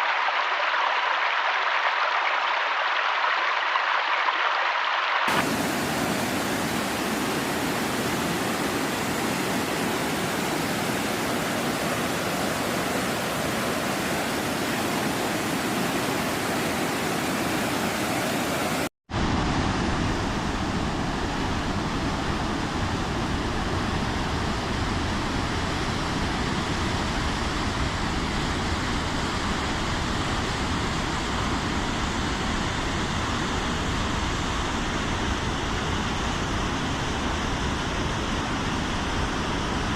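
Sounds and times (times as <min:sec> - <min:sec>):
rushing white water: 0:00.0 - 0:39.9.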